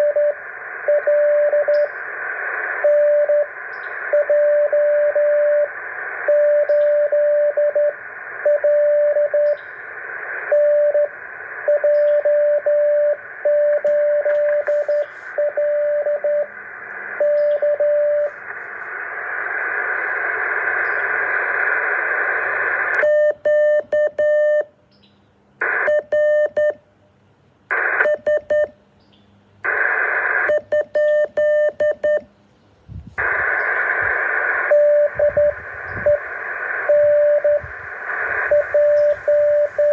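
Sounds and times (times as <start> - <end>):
radio receiver hiss: 0.0 - 24.6, 25.6 - 26.6, 27.7 - 28.7, 29.6 - 39.9
morse code beeps: 10.5 - 11.1, 11.7 - 16.5, 17.2 - 18.3, 23.0 - 24.7, 25.8 - 26.8, 28.0 - 28.7, 30.5 - 32.3, 34.7 - 36.2, 36.8 - 37.7, 38.4 - 39.9.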